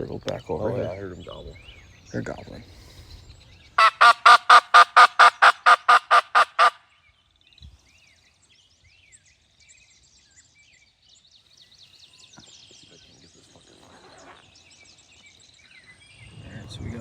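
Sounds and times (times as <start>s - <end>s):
faint songbird chirps: 0.0s - 17.0s
turkey call yelps: 3.8s - 6.8s.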